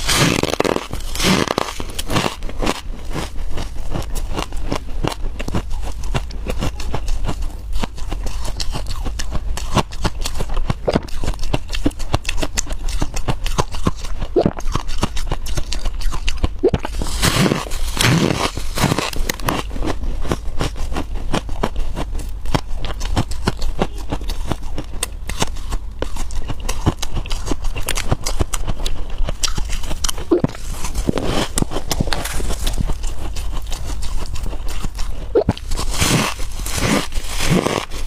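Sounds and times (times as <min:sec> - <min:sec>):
frost being chewed: 0:00.0 - 0:38.0.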